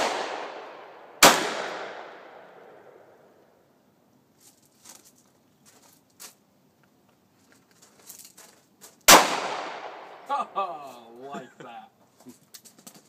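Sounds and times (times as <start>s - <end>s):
handgun shot: 0.0s - 2.2s, 9.1s - 10.0s.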